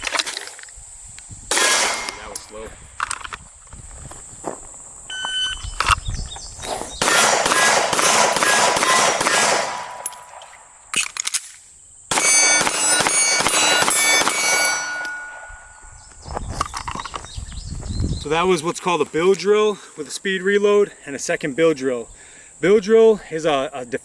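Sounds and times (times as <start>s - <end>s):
handgun shots in fast strings: 1.5s - 2.3s, 7.0s - 10.3s, 12.1s - 15.5s
speed reload clicks: 12.1s - 15.1s.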